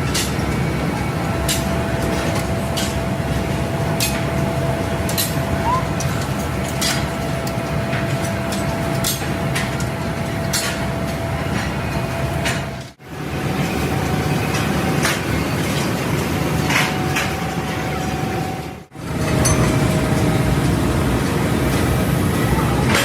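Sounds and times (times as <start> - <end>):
factory machinery noise: 0.0 - 23.0.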